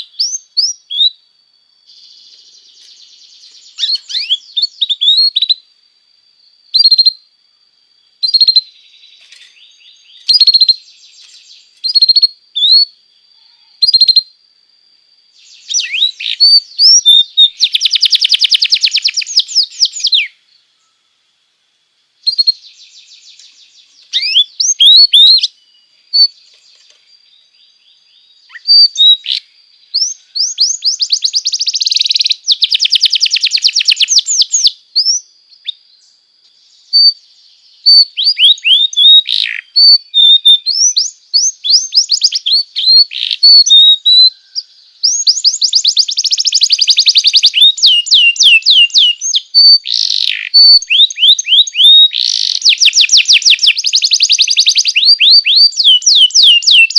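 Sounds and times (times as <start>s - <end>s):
canary singing trills: 0.0s - 1.2s, 1.8s - 5.7s, 6.3s - 7.3s, 8.2s - 14.5s, 15.2s - 21.0s, 22.2s - 56.9s
sharp sweeping whistles: 3.5s - 5.7s, 15.3s - 20.4s, 24.1s - 25.6s.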